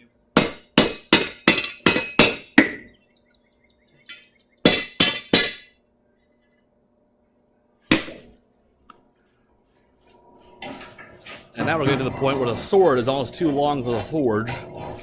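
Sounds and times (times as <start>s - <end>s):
hammer ringing on anvil: 0.4s - 2.9s, 4.7s - 5.8s.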